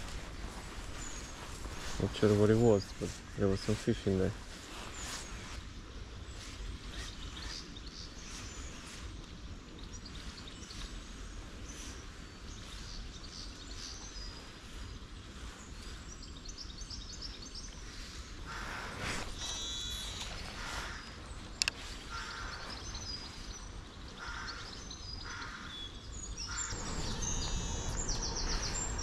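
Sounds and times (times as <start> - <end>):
birds chirping: 0.0 - 29.0
low outdoor rumble: 26.1 - 29.0.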